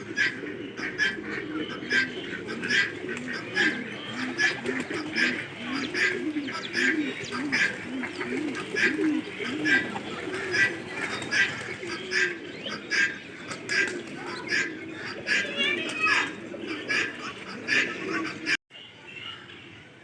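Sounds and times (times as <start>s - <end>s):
pigeons cooing: 0.0s - 18.6s.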